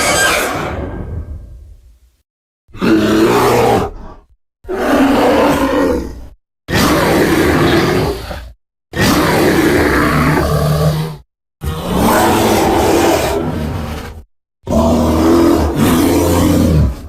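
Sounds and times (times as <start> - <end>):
loud bear-like creature calls: 0.0 - 1.0, 2.7 - 14.0.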